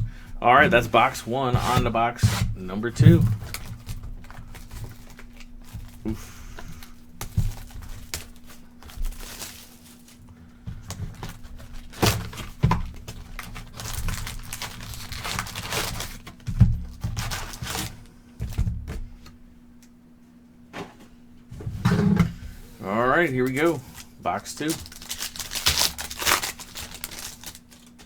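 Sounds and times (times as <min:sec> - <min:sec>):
cardboard box thunks: 0:00.0 - 0:08.2
plastic crinkling and tearing: 0:03.1 - 0:18.0, 0:23.1 - 0:28.0.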